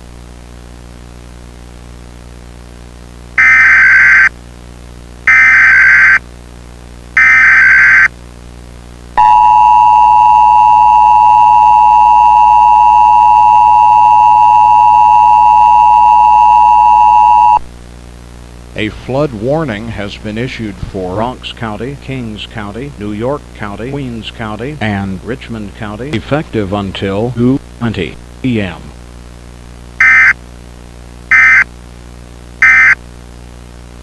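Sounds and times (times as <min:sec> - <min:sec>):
digital data bursts: 0:03.4 - 0:04.3, 0:05.3 - 0:06.2, 0:07.2 - 0:08.1, 0:30.0 - 0:30.3, 0:31.3 - 0:31.6, 0:32.6 - 0:33.0
two-tone alert signal: 0:30.0 - 0:30.3, 0:31.3 - 0:31.6, 0:32.6 - 0:33.0.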